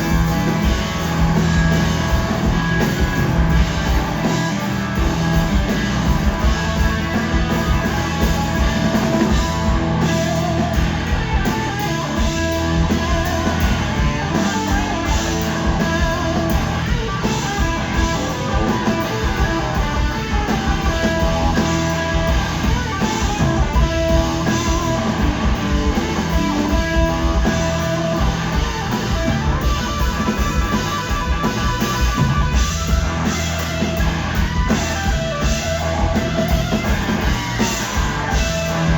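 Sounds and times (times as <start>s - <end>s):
blues-rock band playing: 0.0s - 38.9s.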